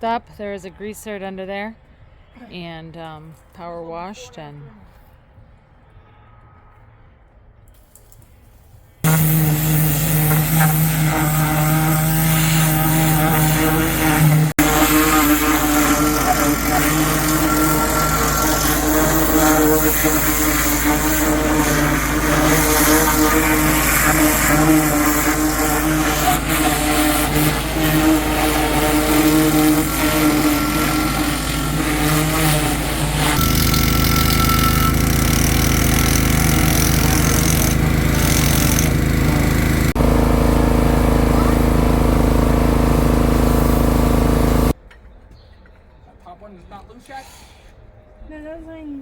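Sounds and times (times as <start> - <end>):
engine running steadily: 35.0 - 44.8.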